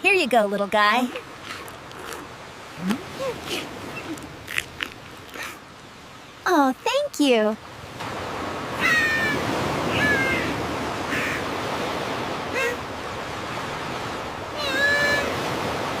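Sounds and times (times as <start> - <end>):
ocean surf washing: 0.0 - 16.0
bird cries: 8.8 - 11.5.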